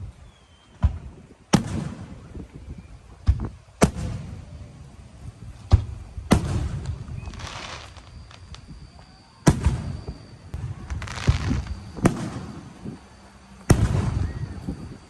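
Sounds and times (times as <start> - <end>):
fireworks crackling: 0.0 - 15.0
fireworks bangs: 0.7 - 15.0.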